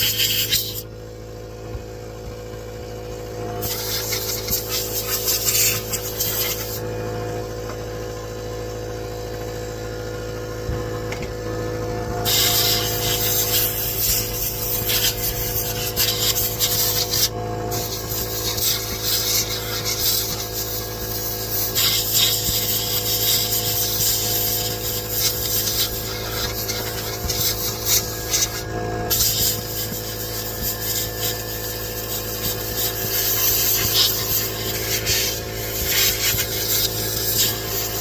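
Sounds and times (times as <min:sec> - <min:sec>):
steady background hum: 0:00.0 - 0:38.0.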